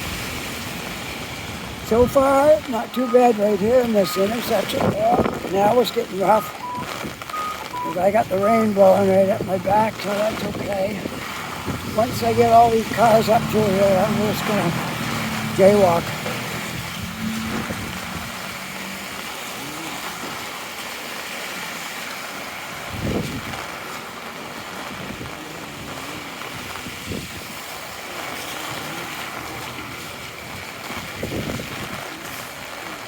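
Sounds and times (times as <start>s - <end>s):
car traffic on wet road: 0.0s - 33.0s
heavy rain: 0.0s - 33.0s
wind buffeting microphone: 4.8s - 5.5s, 6.6s - 18.7s, 22.8s - 23.8s, 24.8s - 28.0s, 30.0s - 32.1s.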